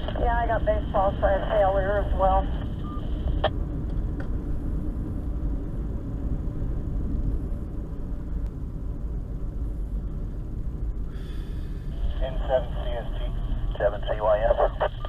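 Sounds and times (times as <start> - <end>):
car cabin rumble: 0.0 - 15.0
radio receiver hiss: 12.0 - 15.0.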